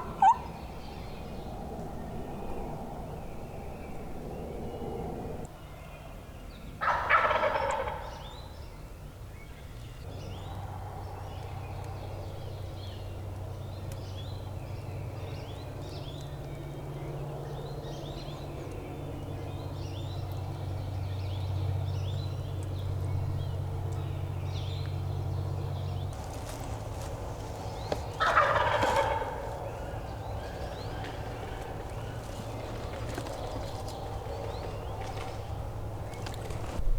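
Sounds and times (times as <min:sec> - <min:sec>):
turkey gobbling: 0:00.0 - 0:00.5, 0:06.8 - 0:08.1, 0:26.2 - 0:36.8.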